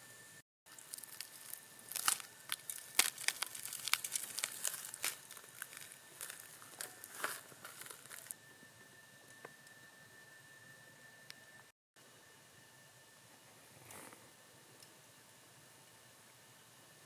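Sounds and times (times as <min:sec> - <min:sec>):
sharp crinkling crackles: 0:00.7 - 0:08.4
faint steady high tone: 0:04.1 - 0:13.6.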